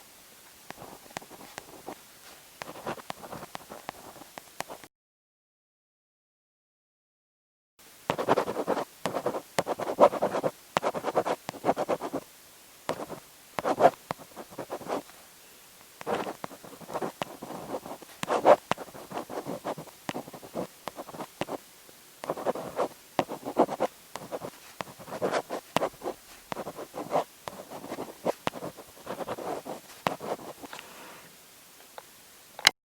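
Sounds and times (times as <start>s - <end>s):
pen scratching on paper: 0.7s - 2.0s, 2.6s - 4.8s, 8.1s - 12.2s, 12.9s - 15.1s, 16.0s - 21.6s, 22.2s - 30.7s.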